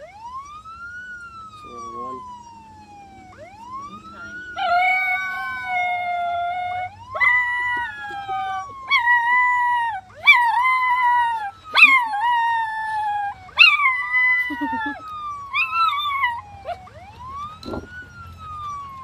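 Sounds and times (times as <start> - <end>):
police siren from phone: 0.0 - 19.0
dog howling: 3.8 - 19.0.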